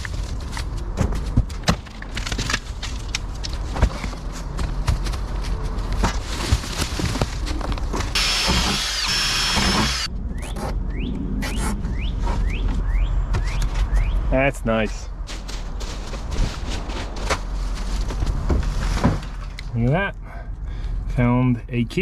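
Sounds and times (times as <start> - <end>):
power tool whining: 8.2 - 10.1.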